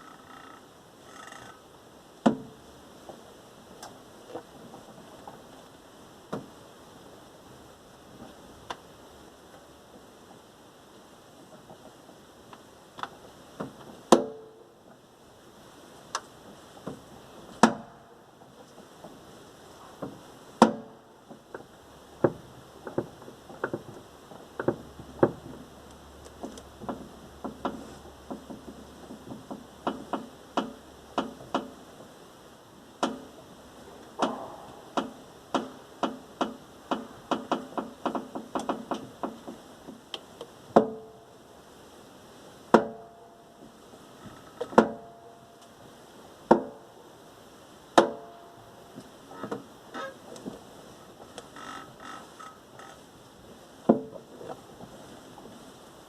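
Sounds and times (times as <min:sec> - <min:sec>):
sharp metallic knocks: 0:34.2 - 0:39.4.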